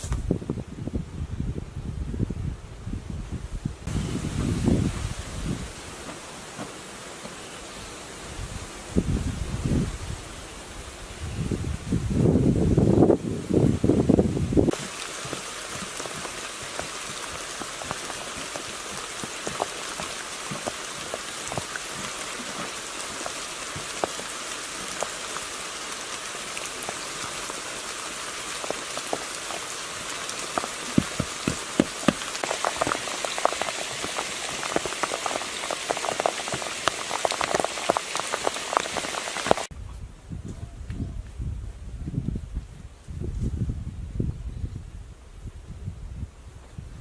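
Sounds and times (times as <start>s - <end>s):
rain falling: 12.8s - 39.7s
heavy raindrops striking: 14.7s - 39.7s.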